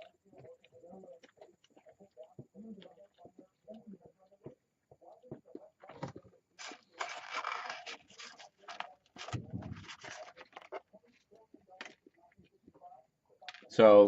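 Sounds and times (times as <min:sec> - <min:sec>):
paper packaging crinkling: 0:06.6 - 0:10.9.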